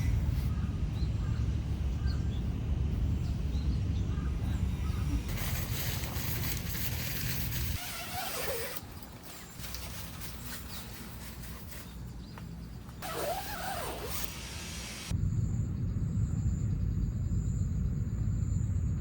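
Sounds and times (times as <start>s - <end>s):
steady low rumble: 0.0s - 7.8s, 14.4s - 19.0s.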